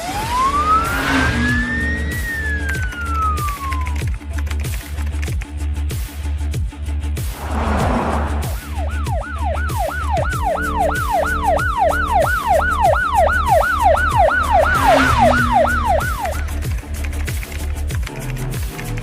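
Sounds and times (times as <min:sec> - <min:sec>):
ambulance siren yelping: 0:00.0 - 0:04.0, 0:08.4 - 0:16.6
electronic music with low beat: 0:01.6 - 0:19.0
short whoosh: 0:07.3 - 0:08.8.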